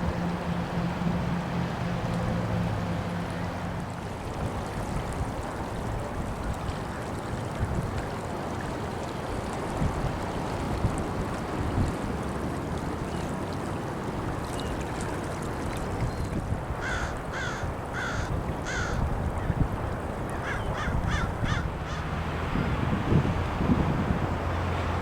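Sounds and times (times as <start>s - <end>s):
wind: 0.0s - 25.0s
crow cawing: 16.8s - 19.0s, 20.4s - 22.0s.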